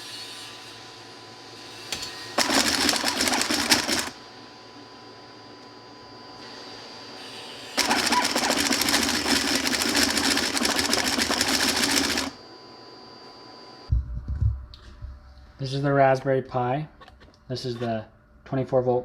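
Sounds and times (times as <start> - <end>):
stepper motors clicking: 2.4 - 4.1, 7.8 - 12.4.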